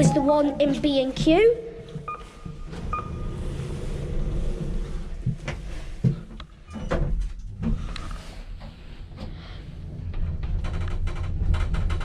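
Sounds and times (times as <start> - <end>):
lift doors sliding shut: 2.2 - 8.3.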